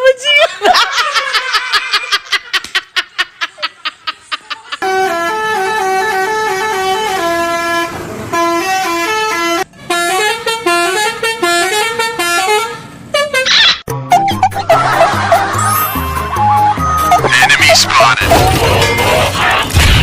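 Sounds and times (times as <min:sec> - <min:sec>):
musical bus horn tune: 0:04.8 - 0:17.9.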